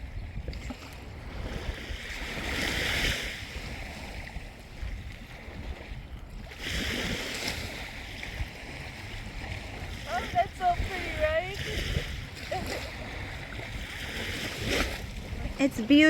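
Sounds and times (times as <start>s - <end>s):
small waves on sandy beach: 0.0s - 16.0s
wind rumble on microphone: 0.0s - 16.0s.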